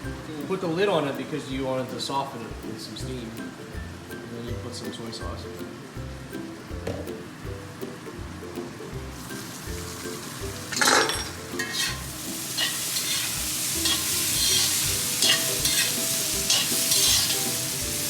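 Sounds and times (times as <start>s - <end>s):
cabbage sizzling in a wok: 7.9s - 18.0s
spatula scraping metal wok: 10.7s - 18.0s.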